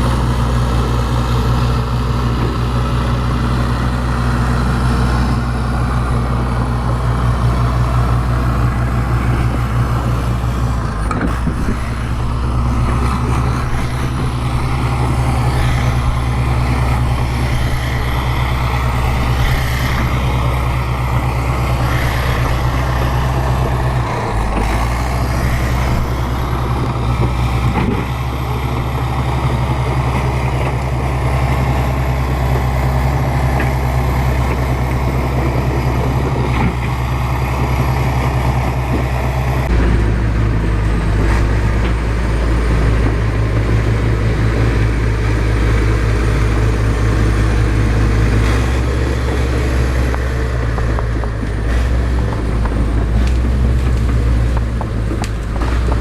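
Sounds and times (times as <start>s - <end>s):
bulldozer diesel engine: 0.0s - 56.0s.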